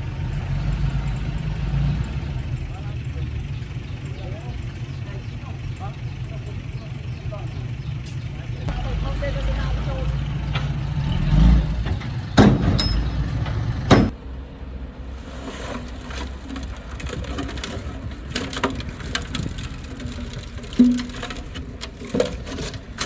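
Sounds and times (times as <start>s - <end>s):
heavy machinery engine running: 0.0s - 23.0s
loud knocks: 11.8s - 14.2s.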